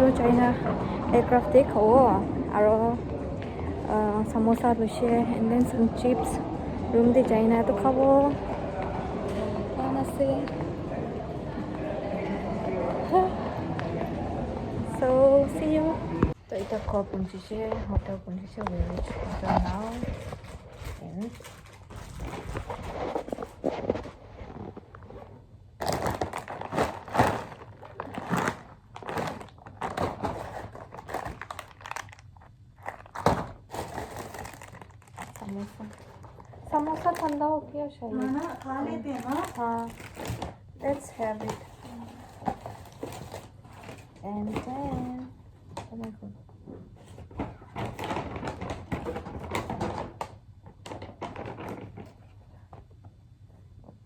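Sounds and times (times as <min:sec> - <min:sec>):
plastic bags crinkling: 0:16.2 - 0:45.2
items thudding down: 0:32.8 - 0:37.4.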